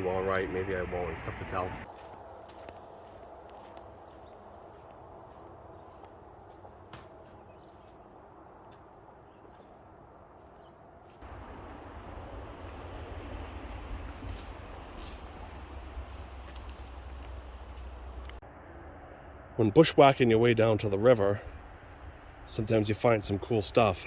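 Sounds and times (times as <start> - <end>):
insects chirping: 0.0 - 18.4
low rumbling noise: 11.2 - 24.0.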